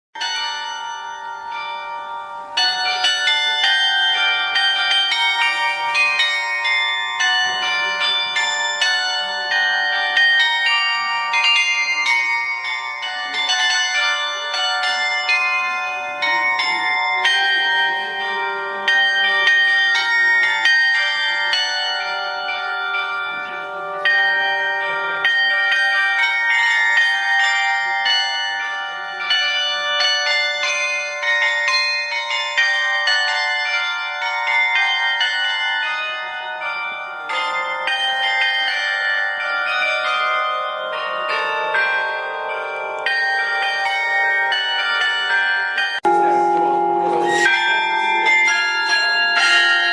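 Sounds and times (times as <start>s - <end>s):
bells ringing: 0.2s - 49.9s.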